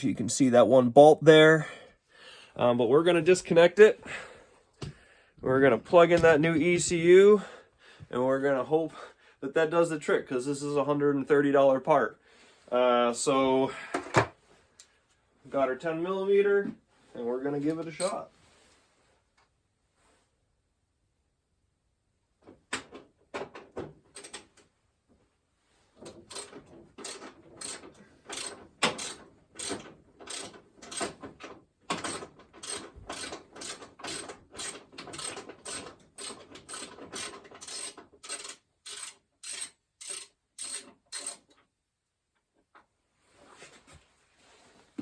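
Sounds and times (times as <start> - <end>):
ratchet wrench clicking: 26.3 - 31.2, 32.0 - 41.5.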